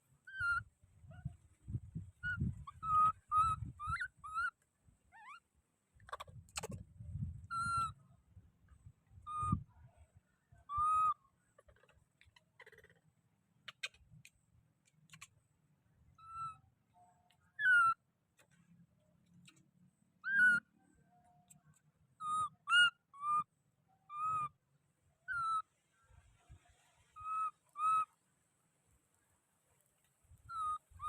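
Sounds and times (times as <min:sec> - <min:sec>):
baby monkey coo calls: 0:00.2 - 0:00.6, 0:02.2 - 0:05.4, 0:06.0 - 0:06.8, 0:07.5 - 0:08.0, 0:09.2 - 0:09.6, 0:10.6 - 0:13.0, 0:16.2 - 0:16.6, 0:17.5 - 0:18.0, 0:20.2 - 0:20.7, 0:22.2 - 0:23.5, 0:24.1 - 0:24.6, 0:25.3 - 0:25.6, 0:27.2 - 0:28.1, 0:30.5 - 0:31.0.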